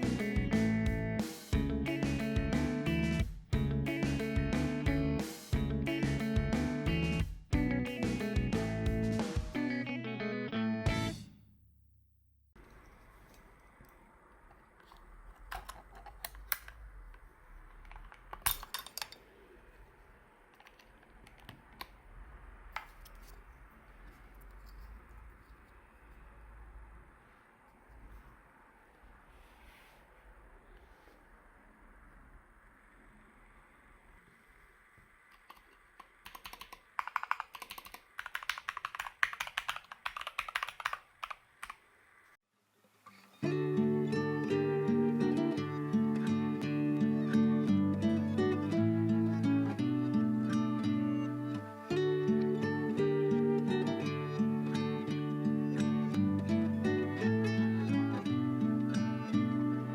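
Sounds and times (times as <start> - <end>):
mechanical keyboard typing: 35.4 - 41.8.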